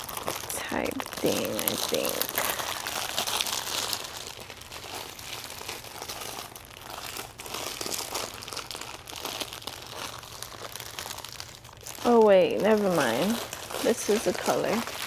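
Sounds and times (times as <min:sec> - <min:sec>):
plastic packaging crinkling: 0:00.0 - 0:15.0.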